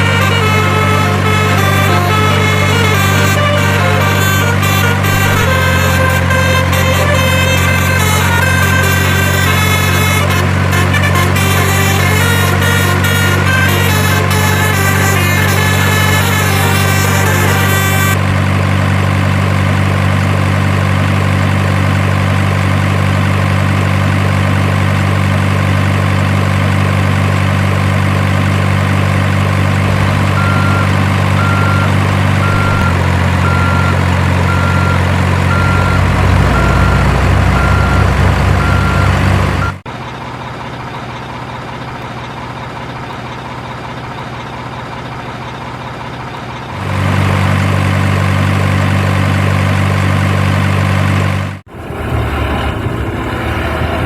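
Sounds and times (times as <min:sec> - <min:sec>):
reversing beeper: 0:00.0 - 0:18.3, 0:29.5 - 0:39.8
electronic diesel engine sound: 0:00.0 - 0:54.0.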